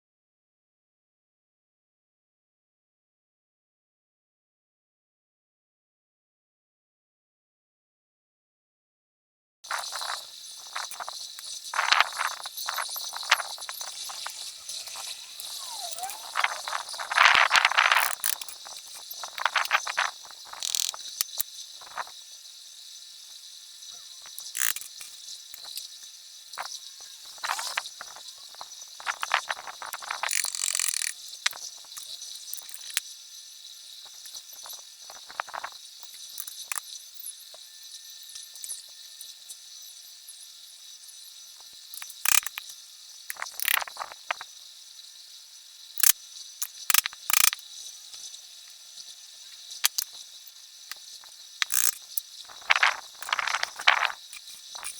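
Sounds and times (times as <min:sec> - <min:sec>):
high-pitched insect chorus: 0:09.6 - 0:54.9
scraping and rubbing motor part: 0:13.9 - 0:19.9, 0:24.5 - 0:24.9.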